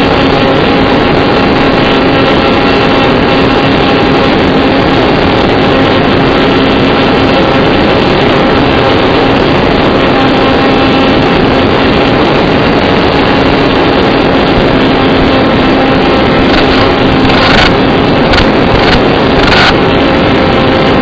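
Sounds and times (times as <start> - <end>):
electric motor and propeller whine: 0.0 - 21.0
wind noise: 0.0 - 21.0.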